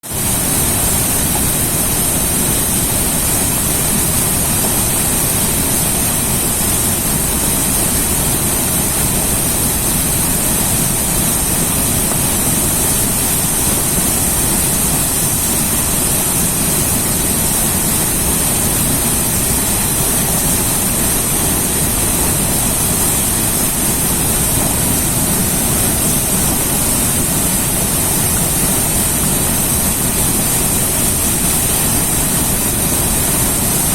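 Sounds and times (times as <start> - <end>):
river water rushing: 8.4 - 33.9.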